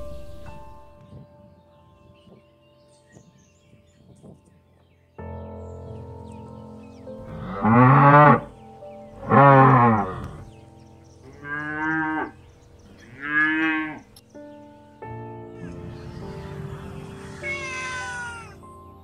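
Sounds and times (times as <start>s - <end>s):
soft background music: 0.0s - 19.0s
cattle mooing: 7.3s - 8.5s, 9.2s - 10.4s, 11.3s - 12.4s, 13.0s - 14.1s.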